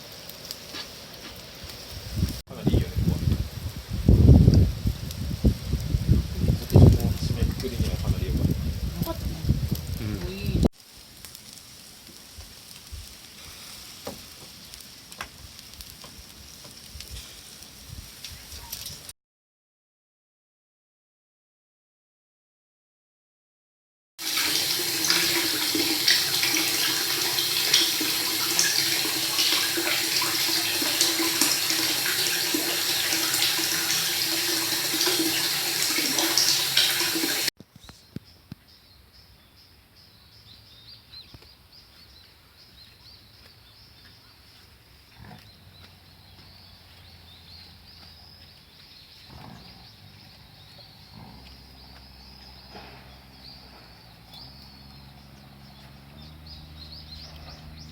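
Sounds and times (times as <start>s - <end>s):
water running from a tap: 24.2s - 37.5s
birds chirping: 24.7s - 57.9s.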